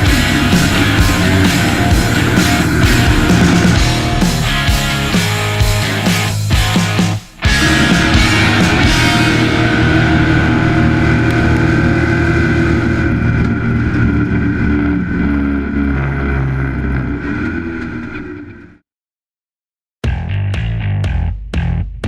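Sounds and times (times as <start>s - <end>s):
rock music: 0.0s - 13.4s
truck engine running: 0.0s - 18.8s.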